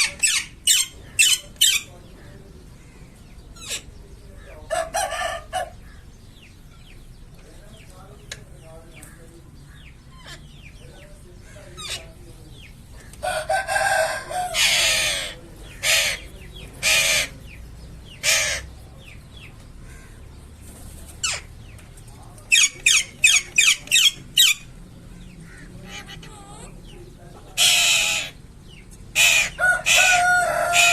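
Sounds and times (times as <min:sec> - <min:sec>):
parakeet squawking: 0:14.5 - 0:17.4, 0:18.2 - 0:18.7, 0:27.6 - 0:28.4, 0:29.1 - 0:30.9.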